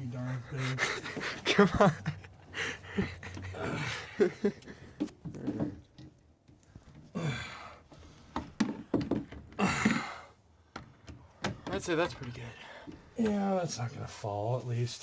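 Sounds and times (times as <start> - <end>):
handling clicks and knocks: 8.3 - 9.6.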